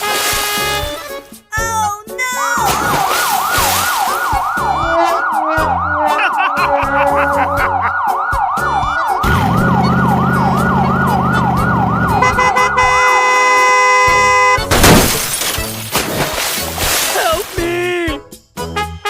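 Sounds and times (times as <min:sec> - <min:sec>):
siren yelping: 0:02.8 - 0:13.3
low buzzing engine rumble: 0:09.2 - 0:14.5.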